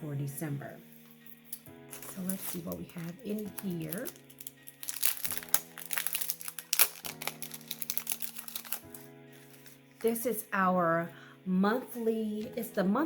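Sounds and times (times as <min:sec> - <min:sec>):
soft background music: 0:00.0 - 0:13.0
packaging crinkling: 0:01.3 - 0:10.1.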